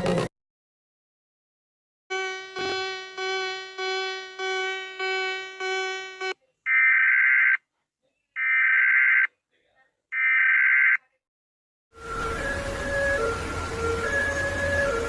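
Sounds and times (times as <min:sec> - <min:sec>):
pulsing pitched alert tone: 0:02.1 - 0:06.4
harsh high alarm tone: 0:02.1 - 0:07.6.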